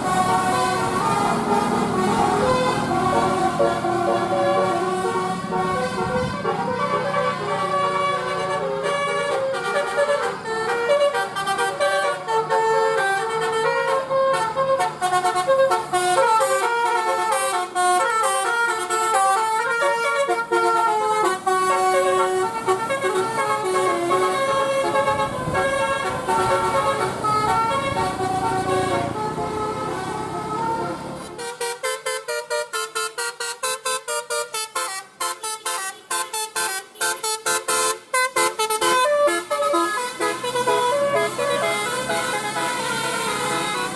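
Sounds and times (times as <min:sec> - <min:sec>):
multi-tone bus horn melody: 0:00.0 - 0:43.9.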